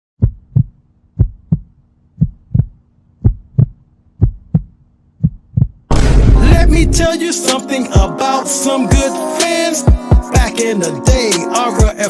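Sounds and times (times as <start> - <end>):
heartbeat-style double thump: 0.2 - 7.1.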